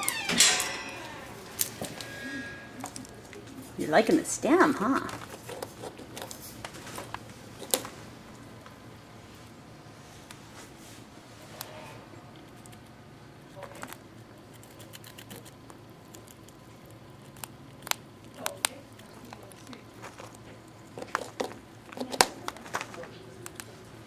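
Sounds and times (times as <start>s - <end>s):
squirrel gnawing and crunching: 0.9s - 2.1s, 2.7s - 10.5s, 11.5s - 24.0s.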